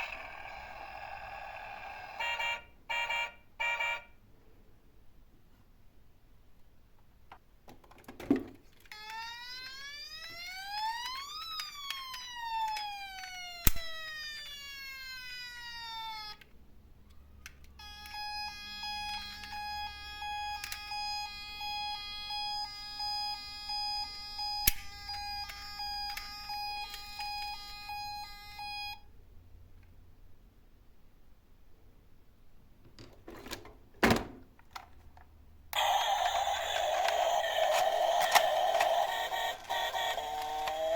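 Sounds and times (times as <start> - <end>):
electronic siren wailing: 8.9 - 16.4, 35.8 - 40.9.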